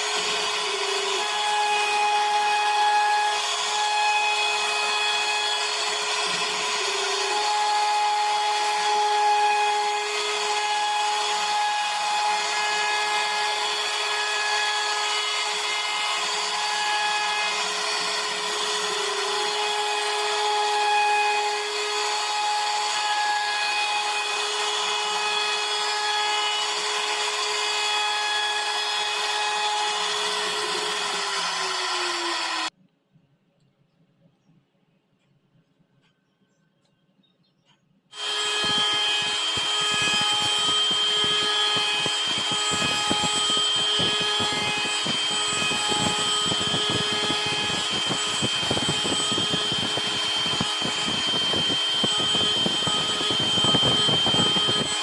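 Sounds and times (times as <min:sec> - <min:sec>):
rasping wood cutting: 0:00.0 - 0:32.7, 0:38.2 - 0:55.0
router spindle whine: 0:00.0 - 0:32.7, 0:38.2 - 0:55.0.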